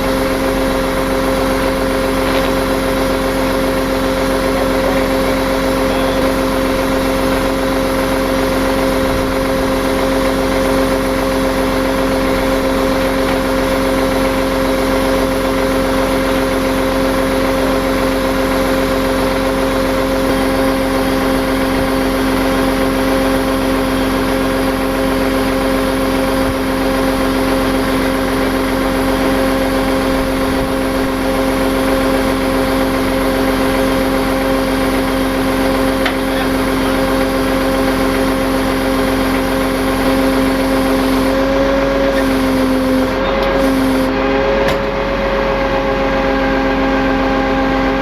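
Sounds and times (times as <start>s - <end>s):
truck engine running: 0.0s - 48.0s.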